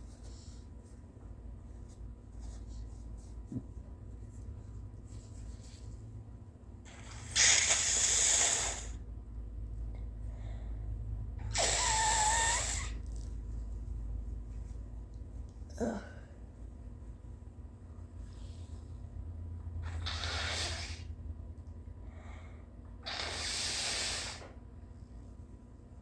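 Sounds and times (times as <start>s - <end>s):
person blowing nose: 6.9s - 9.0s, 11.4s - 13.0s, 19.8s - 21.1s, 23.0s - 24.6s.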